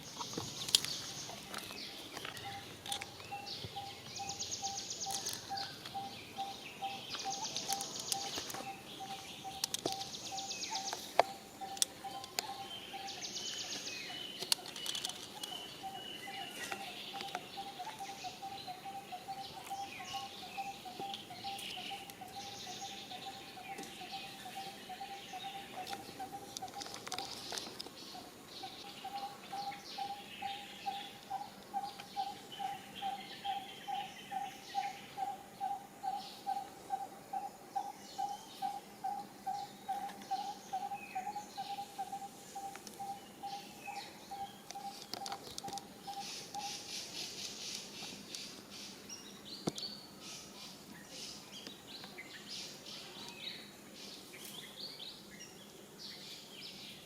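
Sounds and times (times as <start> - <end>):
bird calls: 0.0 - 57.0
clicks and rustles: 14.4 - 15.6, 25.8 - 28.0, 44.7 - 46.6.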